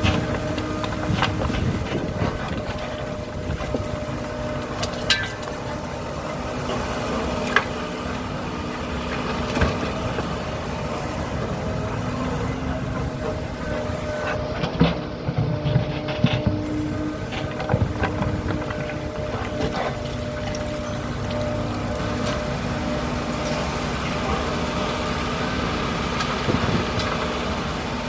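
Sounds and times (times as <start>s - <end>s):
excavator diesel engine running: 0.0s - 28.0s.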